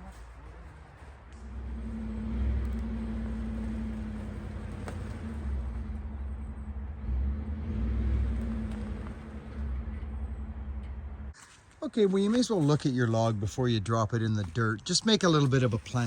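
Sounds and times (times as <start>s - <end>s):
truck engine rumbling: 0.0s - 11.4s.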